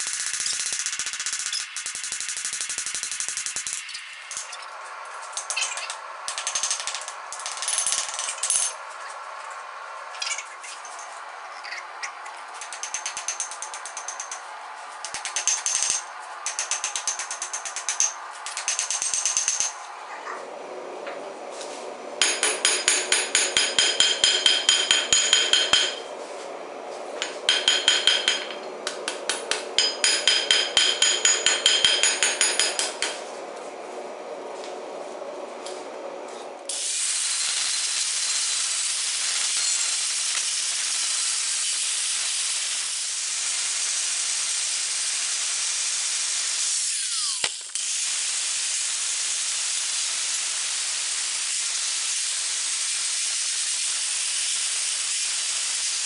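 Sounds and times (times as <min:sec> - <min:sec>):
hammer ringing on anvil: 0:22.2 - 0:26.1, 0:27.5 - 0:28.7, 0:29.5 - 0:33.0
loud steady hiss: 0:36.7 - 0:56.0.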